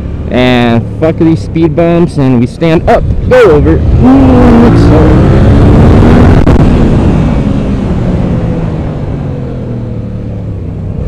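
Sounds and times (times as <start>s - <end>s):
motorcycle engine running: 0.0s - 11.0s
wind rush: 2.8s - 9.8s.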